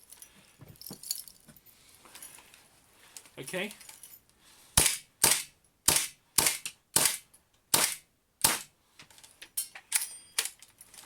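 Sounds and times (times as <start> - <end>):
airsoft pistol shots: 4.8 - 8.7.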